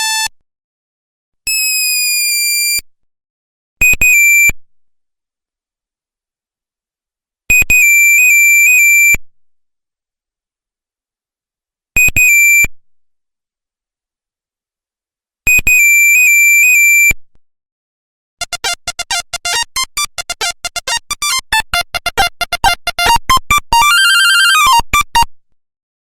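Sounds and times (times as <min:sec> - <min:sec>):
monophonic phone ringtone beeps: 0:18.4 - 0:25.3.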